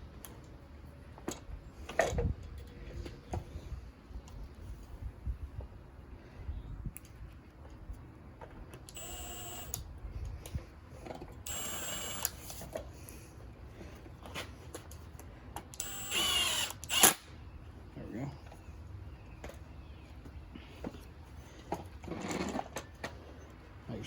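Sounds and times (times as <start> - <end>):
cordless drill driving screws: 8.9 - 9.8, 11.5 - 12.5, 15.8 - 17.2.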